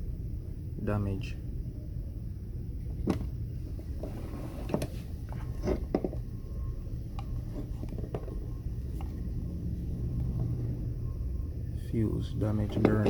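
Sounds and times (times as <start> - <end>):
low background rumble: 0.0 - 13.0
iron parts clicking and knocking: 12.6 - 13.0.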